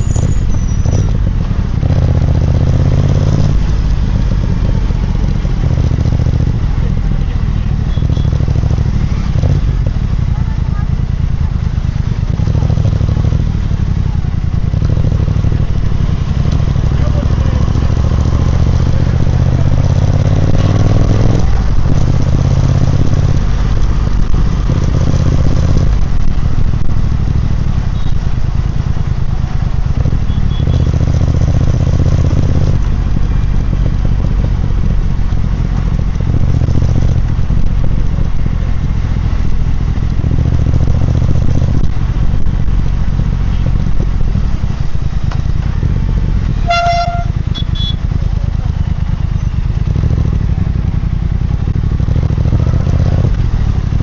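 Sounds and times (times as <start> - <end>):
motorcycle engine and exhaust: 0.0 - 54.0
horn toot: 46.6 - 48.1.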